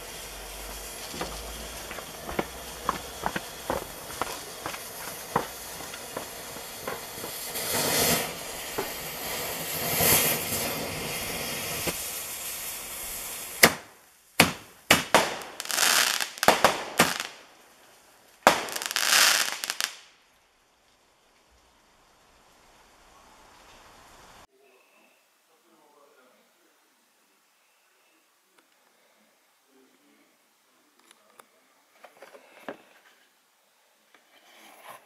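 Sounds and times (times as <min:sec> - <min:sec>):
fireworks sharp bangs: 0:00.0 - 0:17.5, 0:18.4 - 0:20.0
fireworks hissing and crackling: 0:00.0 - 0:24.5.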